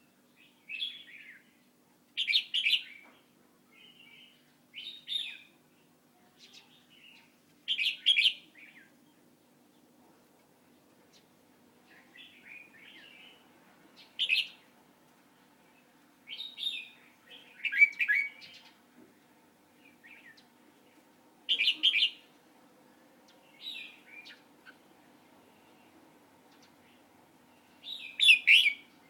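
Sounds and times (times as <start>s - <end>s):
bird chirping: 0.3s - 3.1s, 6.3s - 9.8s, 11.9s - 14.7s, 15.4s - 18.8s, 19.8s - 22.3s, 23.3s - 24.8s, 25.5s - 29.0s.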